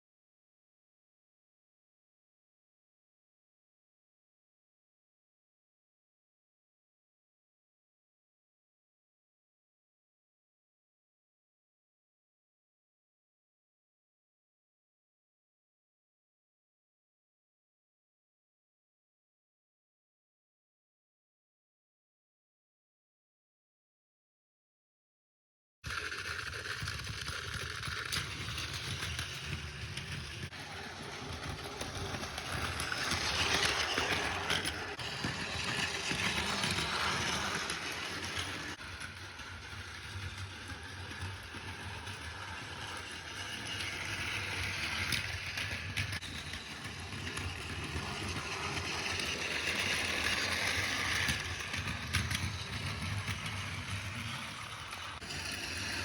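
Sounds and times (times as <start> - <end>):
toy train motor whirring: 25.9 - 56.0
wheels rattling over rail joints: 25.9 - 56.0.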